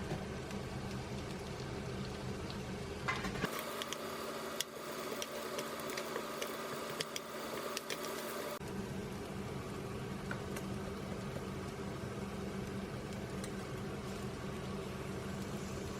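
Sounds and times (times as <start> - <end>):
food bubbling in a pan: 0.0 - 15.9
sharp pops and crackles: 2.5 - 8.3.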